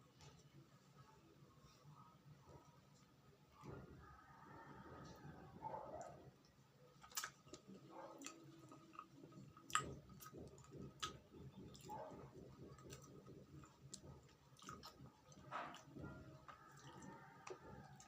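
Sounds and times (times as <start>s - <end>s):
quiet chewing: 1.6s - 18.0s
sticky mouth clicks and smacks: 7.0s - 18.0s.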